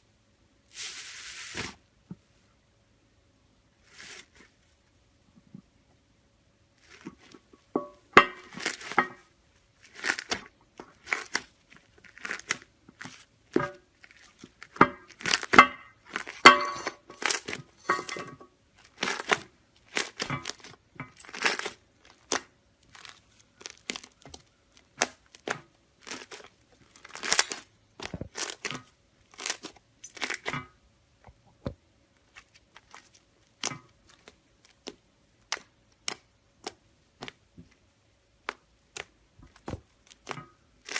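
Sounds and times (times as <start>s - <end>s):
crunchy slime crackling: 6.8s - 7.4s, 8.4s - 9.0s, 9.7s - 16.5s, 17.2s - 17.8s, 18.7s - 30.6s, 32.2s - 37.8s, 38.4s - 40.9s.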